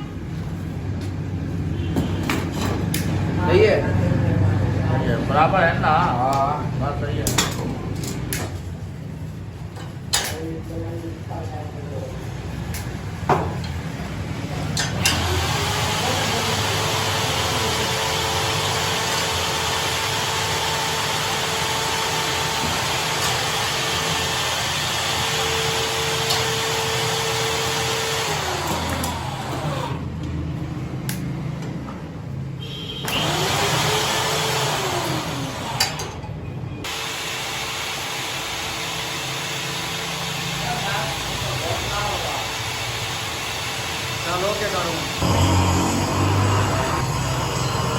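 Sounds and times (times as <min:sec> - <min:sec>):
lathe motor humming: 0:15.1 - 0:30.1, 0:33.2 - 0:36.0, 0:42.6 - 0:47.9.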